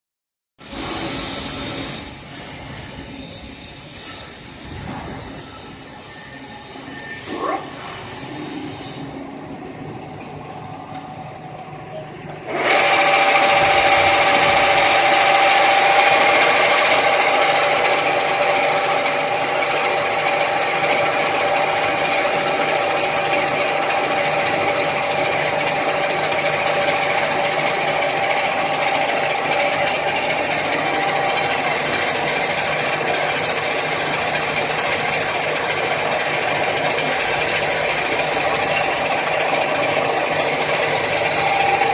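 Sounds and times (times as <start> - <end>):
lathe gearbox whine: 0.6 - 41.9
lathe spindle running: 12.4 - 41.9.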